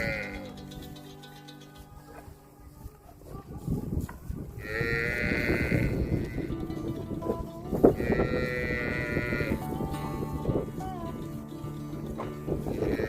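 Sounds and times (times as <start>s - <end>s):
cow mooing: 0.0s - 0.6s, 4.6s - 6.6s, 7.9s - 10.6s.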